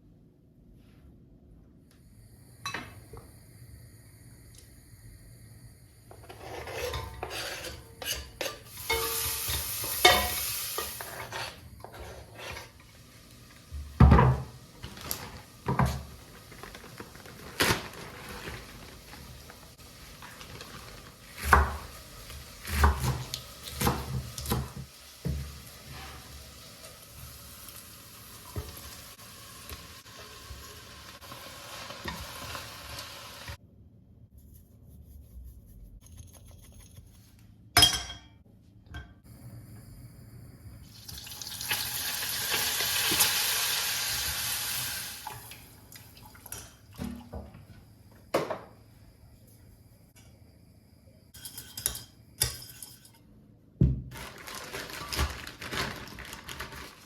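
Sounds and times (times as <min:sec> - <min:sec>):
food sizzling in a pan: 0:06.4 - 0:16.5, 0:18.9 - 0:33.6, 0:40.9 - 0:45.8.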